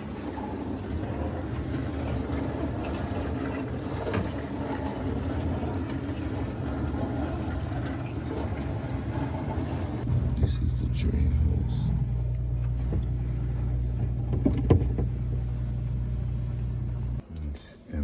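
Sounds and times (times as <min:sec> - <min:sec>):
water spraying and sloshing: 0:00.0 - 0:10.1
dishwasher pump motor humming: 0:00.0 - 0:17.5.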